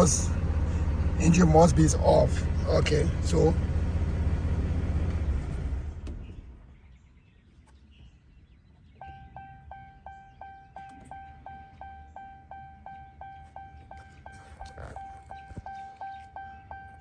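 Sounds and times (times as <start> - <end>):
diesel truck engine shutting off: 0.0 - 7.2, 9.0 - 17.0
dashboard warning chime beeps: 9.0 - 17.0.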